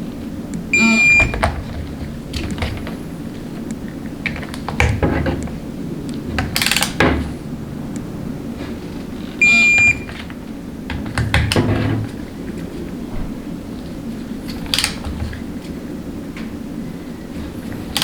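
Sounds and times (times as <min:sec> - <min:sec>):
hand tools clicking and knocking: 0:01.2 - 0:08.1, 0:17.4 - 0:18.0.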